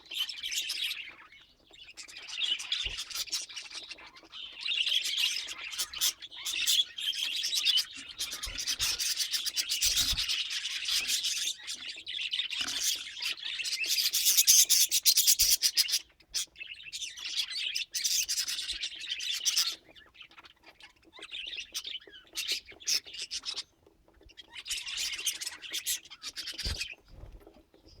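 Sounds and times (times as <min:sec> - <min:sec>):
budgerigars chattering: 0:00.1 - 0:28.0.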